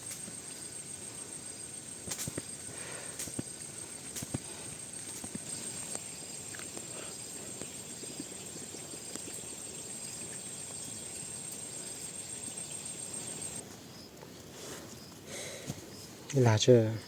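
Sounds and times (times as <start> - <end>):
high-pitched insect drone: 0.0 - 13.6
faint insect chirp: 0.0 - 17.0.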